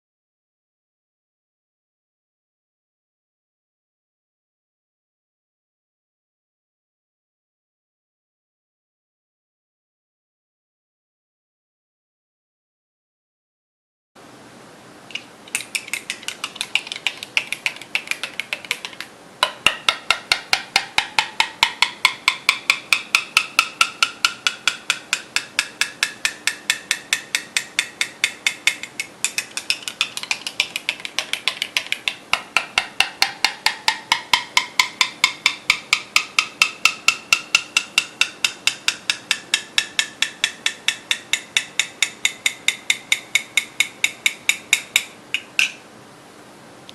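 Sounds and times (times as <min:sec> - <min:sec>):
spoon tapping mug with rising note: 0:15.1 - 0:45.8.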